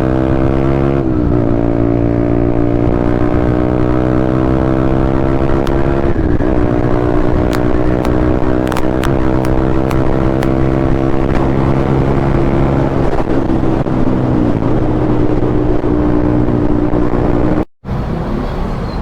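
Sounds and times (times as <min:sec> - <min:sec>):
wind noise: 0:05.0 - 0:17.6.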